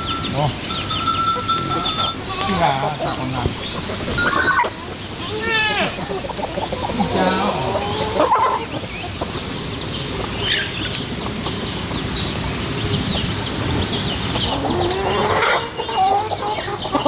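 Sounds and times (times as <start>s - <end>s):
high chick chirps: 0.0s - 13.3s
chickens clucking: 0.0s - 17.0s
rising chicken call: 3.8s - 8.8s.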